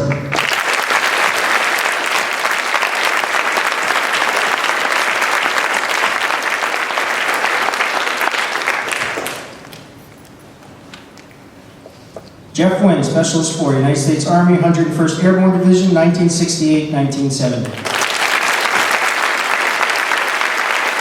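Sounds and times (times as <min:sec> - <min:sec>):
audience applause: 0:00.0 - 0:09.8, 0:17.7 - 0:21.0.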